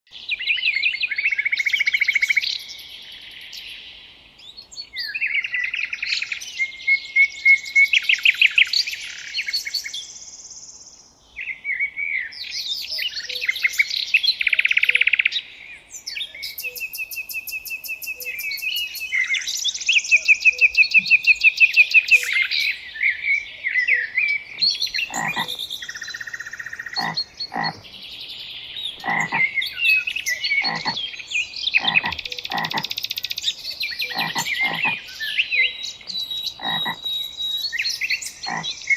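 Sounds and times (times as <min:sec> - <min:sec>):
songbirds trilling and whistling: 0:00.1 - 0:38.9
deeper bird calls: 0:24.5 - 0:33.3, 0:33.9 - 0:35.5, 0:36.1 - 0:37.3, 0:38.3 - 0:38.8.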